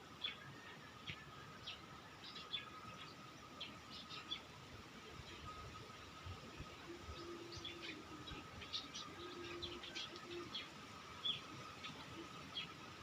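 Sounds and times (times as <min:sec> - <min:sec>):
birds chirping: 0:00.0 - 0:04.6, 0:05.2 - 0:13.0.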